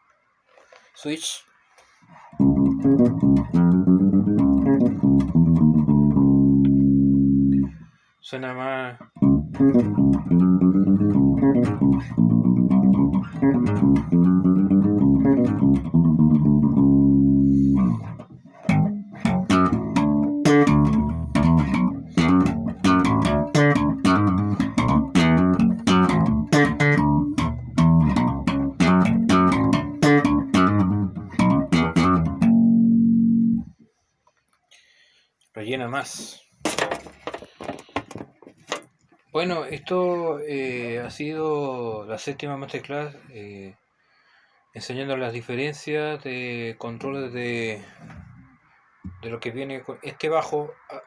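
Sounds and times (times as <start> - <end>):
electric bass guitar line: 2.4 - 7.8, 9.1 - 33.8.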